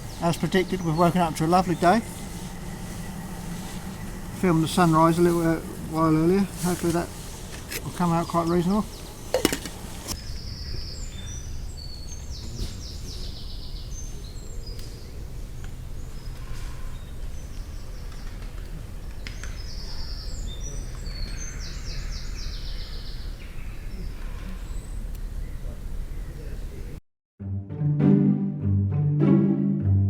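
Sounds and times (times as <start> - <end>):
songbird singing with trills: 0.0 - 7.2, 19.2 - 26.7
steady low rumble: 0.0 - 12.4.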